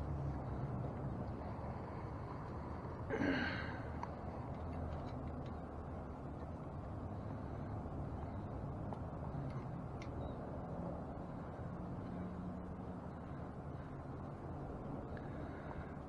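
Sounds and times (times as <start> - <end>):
breathy sigh: 3.1 - 4.0.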